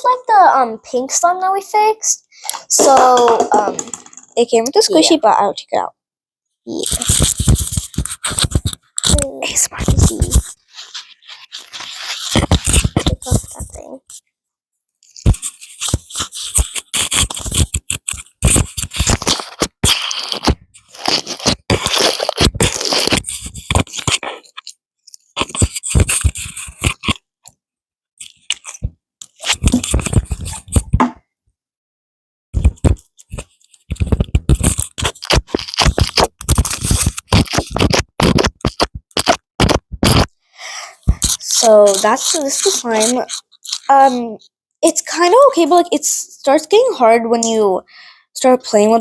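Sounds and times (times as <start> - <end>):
slime crunching and crackling: 15.1 - 27.2, 32.6 - 40.3, 41.0 - 44.2.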